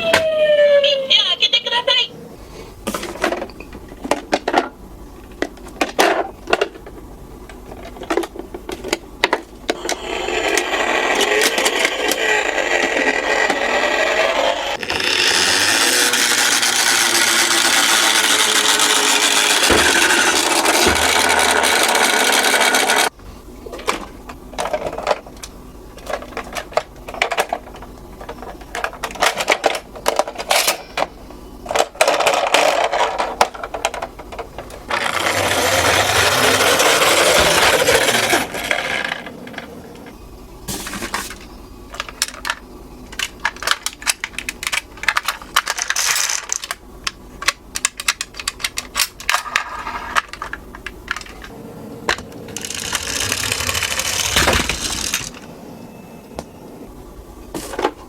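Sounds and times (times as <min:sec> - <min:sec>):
toy cars rolling rattle: 0:07.7 - 0:23.1, 0:26.0 - 0:31.1, 0:31.7 - 0:40.1, 0:41.0 - 0:55.5.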